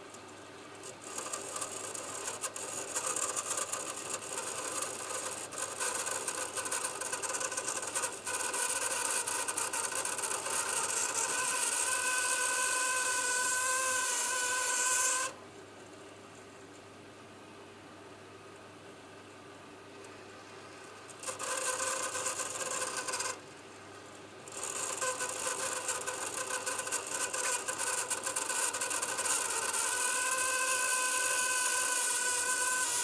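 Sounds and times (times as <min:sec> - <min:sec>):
boiler valve squealing tone: 0:00.9 - 0:15.4, 0:21.1 - 0:23.4, 0:24.5 - 0:33.0
boiler valve rasping hiss: 0:01.0 - 0:15.4, 0:24.5 - 0:33.0.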